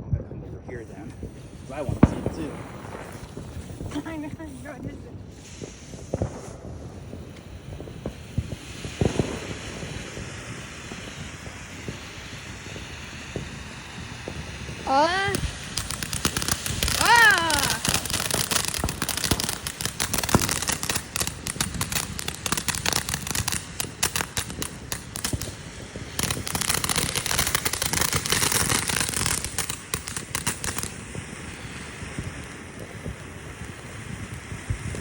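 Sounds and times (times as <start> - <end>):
firework crackling: 0.5 - 35.0
firework hiss: 0.7 - 35.0.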